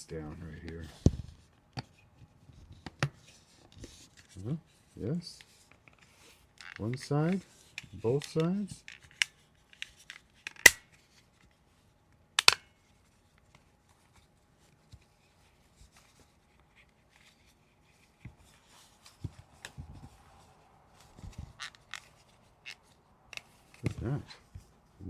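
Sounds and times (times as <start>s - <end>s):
plastic clicks and handling: 5.4s - 11.5s, 12.4s - 12.7s
plastic parts snapping: 8.2s - 10.9s, 12.4s - 12.6s.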